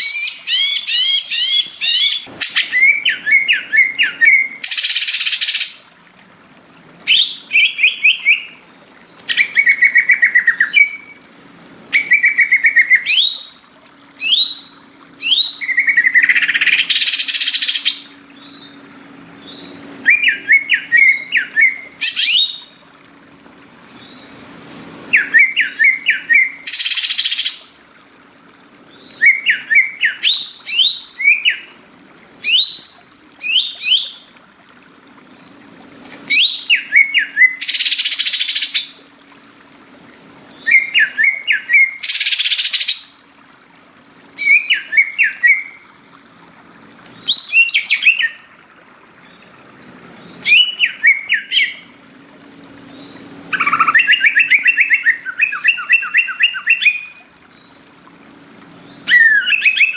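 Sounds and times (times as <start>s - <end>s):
bird whistled chirps: 0.0s - 5.6s, 19.4s - 22.8s, 25.1s - 27.6s, 29.2s - 31.7s, 32.4s - 34.2s, 36.3s - 38.9s, 40.6s - 43.1s, 44.4s - 45.8s, 47.2s - 48.4s, 50.4s - 51.9s, 53.0s - 57.2s, 59.0s - 59.9s.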